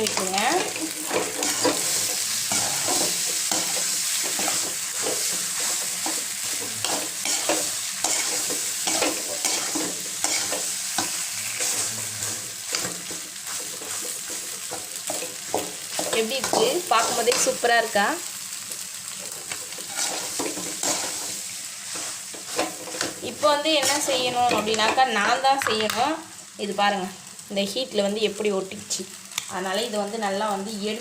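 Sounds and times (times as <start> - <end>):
spatula scraping a pan: 0.0 - 17.6, 19.2 - 23.2
frying sizzle: 0.0 - 31.0.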